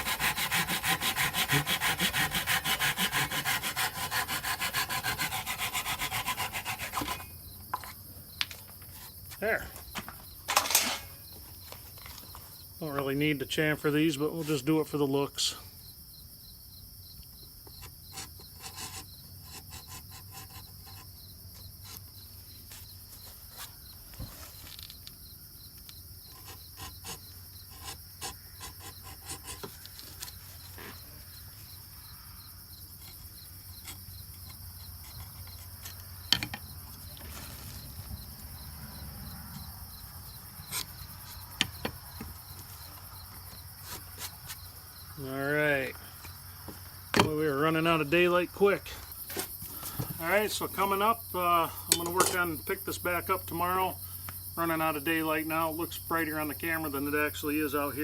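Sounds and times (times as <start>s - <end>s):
hand tool strokes on wood: 0.0s - 7.3s, 17.8s - 22.0s, 26.3s - 31.0s, 42.2s - 44.7s
crickets chirping: 0.0s - 58.0s.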